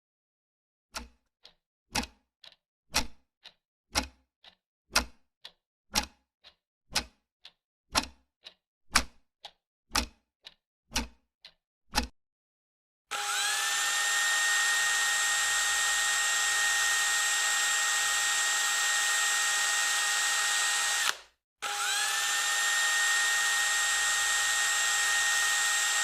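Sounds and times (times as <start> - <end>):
clock ticking: 0.9 - 12.2.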